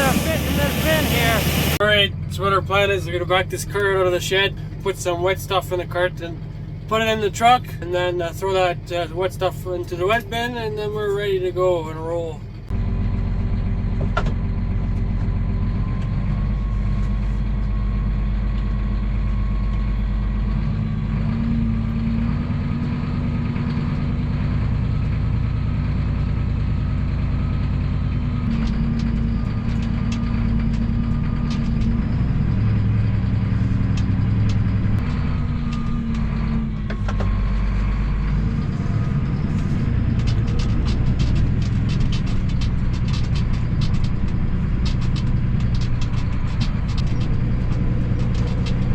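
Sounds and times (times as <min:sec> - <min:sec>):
high whine: 0:00.0 - 0:03.0
tractor diesel engine running: 0:00.0 - 0:48.9.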